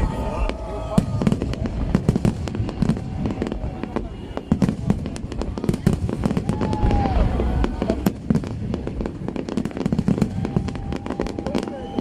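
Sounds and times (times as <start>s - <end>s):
fireworks crackling pops: 0.0s - 12.0s
falling whistle: 11.0s - 12.0s.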